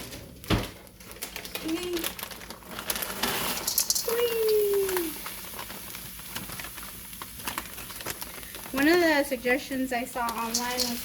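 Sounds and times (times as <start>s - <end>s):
utensil rattling in a pan: 2.4s - 11.0s.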